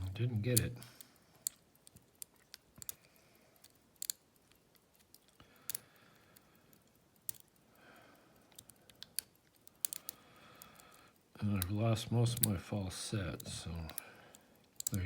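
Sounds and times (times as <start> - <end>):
lock pick clicks: 0.0 - 5.8, 6.4 - 7.6, 8.4 - 11.0, 14.6 - 15.0.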